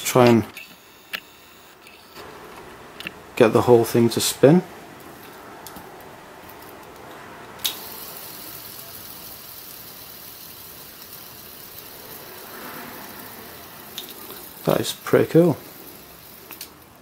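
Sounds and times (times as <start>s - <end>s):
fidget spinner whirring: 0.5s - 3.2s, 6.5s - 17.0s
fidget spinner click: 7.6s - 12.5s, 13.1s - 17.0s.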